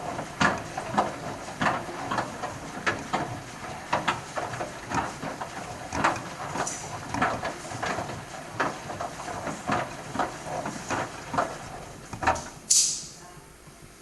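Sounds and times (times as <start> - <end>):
water and laundry sloshing: 0.0 - 12.7
washing machine drum turning: 0.0 - 13.1
short sharp hiss: 12.7 - 13.2.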